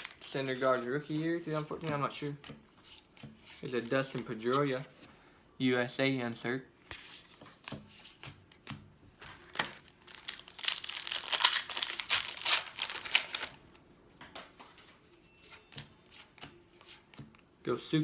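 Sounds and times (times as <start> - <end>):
foil wrapper crinkling: 0.0 - 1.2, 9.4 - 13.8.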